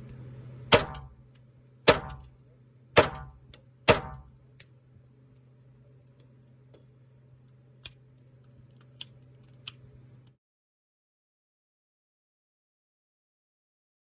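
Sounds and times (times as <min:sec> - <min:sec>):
low steady hum: 0:00.0 - 0:10.4
loud sharp knocks: 0:00.7 - 0:01.1, 0:01.9 - 0:02.2, 0:03.0 - 0:04.3.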